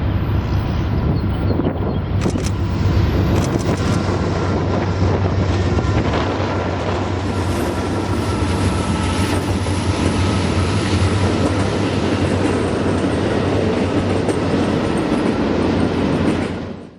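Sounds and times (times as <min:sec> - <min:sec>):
train wheels rumbling on rail: 0:00.0 - 0:16.9.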